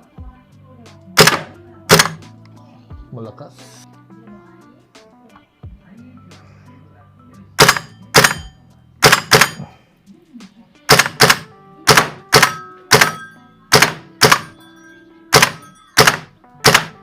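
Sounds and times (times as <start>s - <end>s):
airsoft rifle firing sharp cracks: 1.2s - 2.3s, 7.6s - 9.7s, 10.9s - 14.6s, 15.3s - 17.0s.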